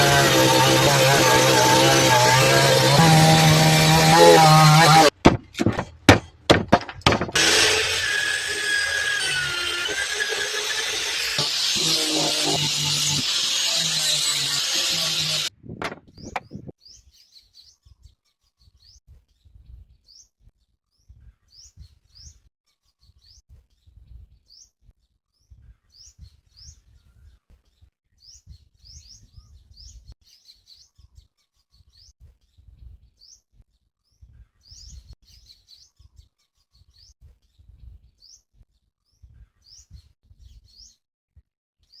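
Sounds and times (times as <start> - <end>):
small birds chirping: 16.0 - 20.3, 25.4 - 41.0.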